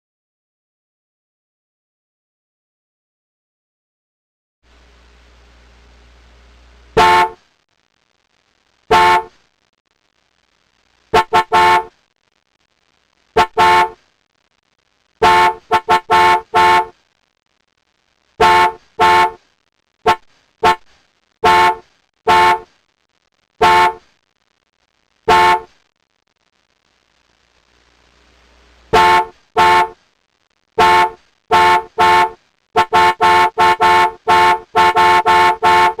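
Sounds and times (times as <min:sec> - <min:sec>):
car horn short beeps: 0:07.0 - 0:07.4, 0:08.9 - 0:09.3, 0:18.4 - 0:19.4, 0:21.4 - 0:22.6, 0:29.0 - 0:30.0, 0:30.8 - 0:36.0.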